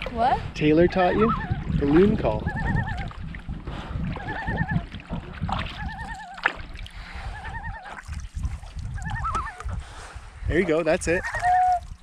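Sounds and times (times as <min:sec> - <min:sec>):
water noise: 0:00.0 - 0:12.0
wind: 0:00.0 - 0:12.0
hand-blown loon call hoots: 0:02.4 - 0:03.1, 0:04.2 - 0:04.9, 0:05.7 - 0:06.5, 0:07.2 - 0:08.0, 0:09.0 - 0:09.7, 0:11.2 - 0:12.0.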